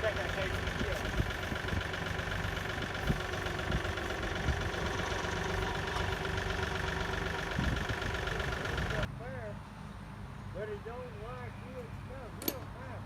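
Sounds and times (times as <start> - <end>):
engine idling: 0.0 - 9.1.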